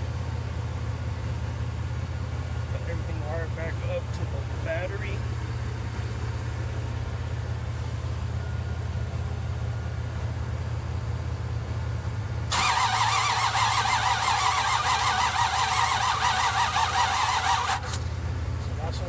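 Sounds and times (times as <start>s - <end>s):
starter motor cranking engine: 12.5s - 19.0s.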